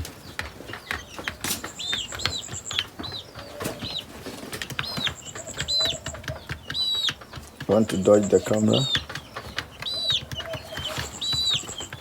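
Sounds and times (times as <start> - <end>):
chicks peeping: 0.0 - 12.0
clicks and taps: 4.6 - 12.0.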